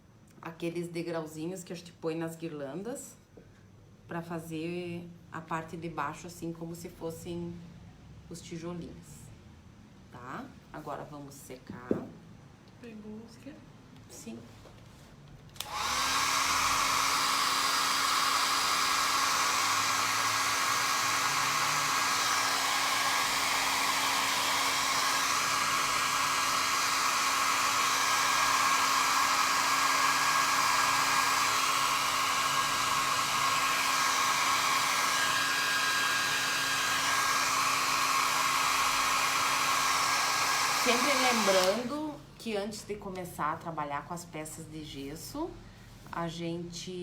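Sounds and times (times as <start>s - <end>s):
hair dryer running: 15.6s - 42.2s.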